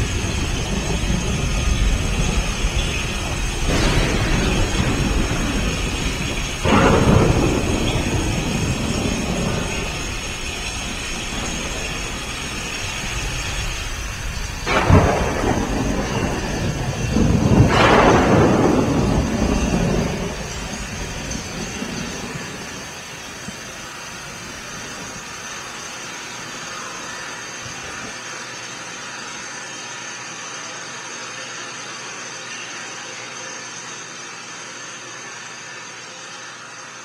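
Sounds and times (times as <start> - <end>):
sharp thunder crack: 0.0 - 25.3
thunder rolls: 0.0 - 28.2
steady rain noise: 0.0 - 32.3.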